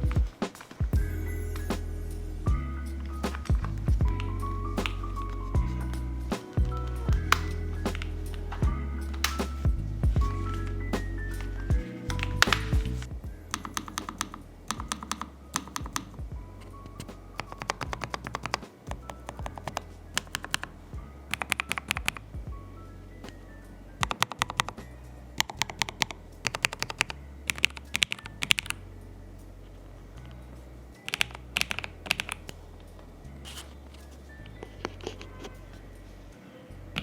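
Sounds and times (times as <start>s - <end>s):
mechanical keyboard typing: 13.5s - 20.7s, 21.3s - 22.2s, 24.0s - 24.8s, 25.4s - 28.8s, 31.0s - 32.6s.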